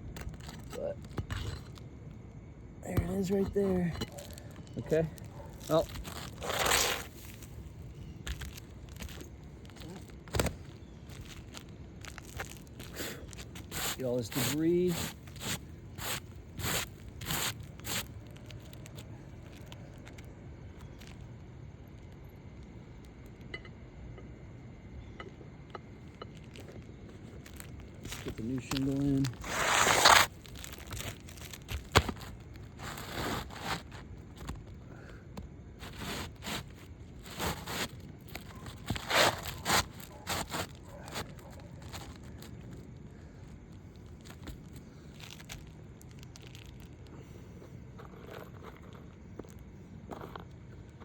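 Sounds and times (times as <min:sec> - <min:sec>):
broom sweeping roof shingles: 0:11.1 - 0:18.7, 0:27.5 - 0:34.0, 0:35.8 - 0:42.2.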